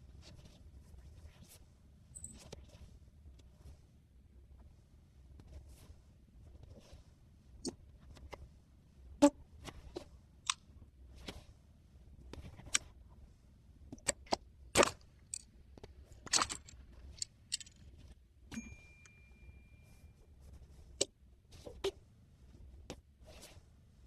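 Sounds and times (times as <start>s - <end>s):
small tools clicking and tapping: 14.0s - 17.9s
faint high tone: 18.5s - 20.2s.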